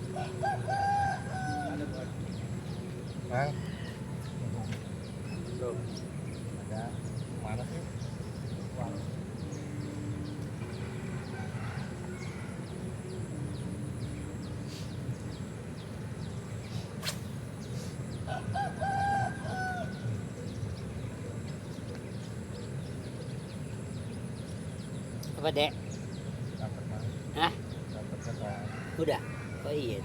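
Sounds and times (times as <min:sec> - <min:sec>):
low background noise: 0:00.0 - 0:30.0
rooster crowing: 0:00.1 - 0:02.1, 0:10.8 - 0:12.8, 0:18.3 - 0:20.1, 0:28.4 - 0:30.0.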